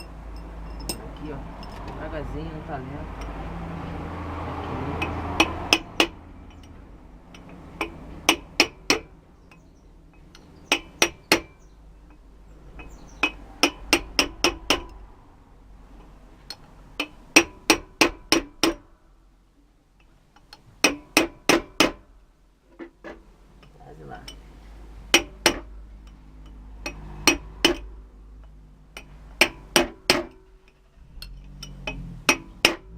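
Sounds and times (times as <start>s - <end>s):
hammer tapping on metal: 5.0s - 15.0s, 16.5s - 18.9s, 20.8s - 22.1s, 25.1s - 30.5s, 31.5s - 32.9s.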